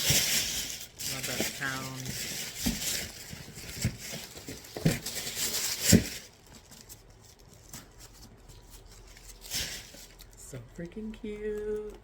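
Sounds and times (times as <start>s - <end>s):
packaging rustling: 0.0s - 10.4s.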